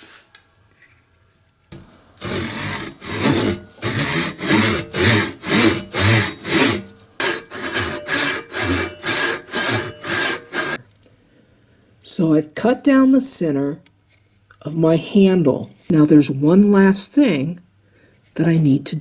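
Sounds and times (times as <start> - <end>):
hand saw cutting wood: 1.8 - 10.8.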